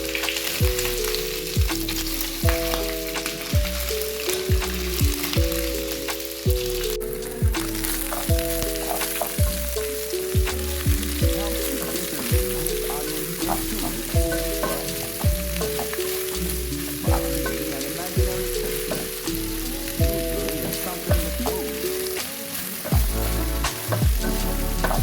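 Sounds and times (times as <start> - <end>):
crackling hiss: 0.0 - 25.0
instrumental music with beat: 0.0 - 25.0.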